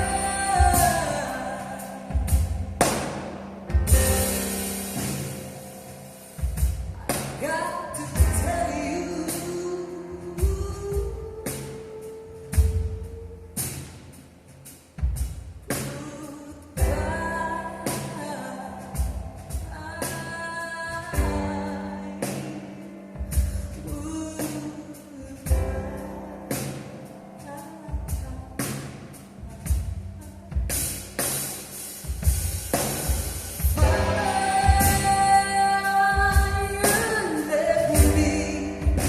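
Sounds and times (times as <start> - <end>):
woman singing: 0.0 - 2.9, 7.0 - 13.8, 15.7 - 30.8, 33.7 - 39.0
drum kit slow beat: 0.0 - 39.0
piano and keyboards: 0.0 - 39.0.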